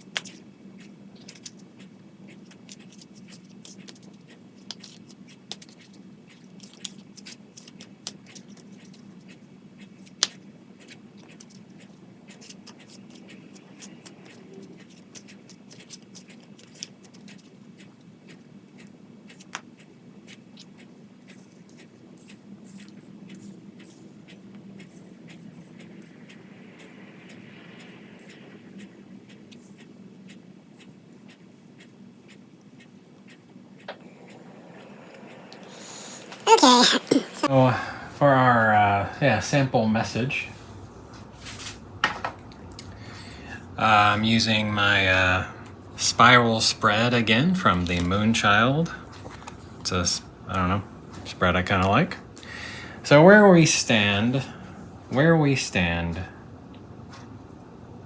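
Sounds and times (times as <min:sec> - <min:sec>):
steady low hum: 0:21.0 - 0:58.0.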